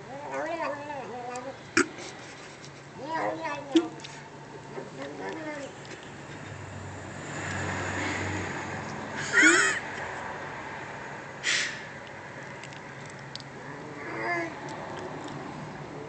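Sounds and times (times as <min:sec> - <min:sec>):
cat making vocal noises: 0:02.9 - 0:04.1.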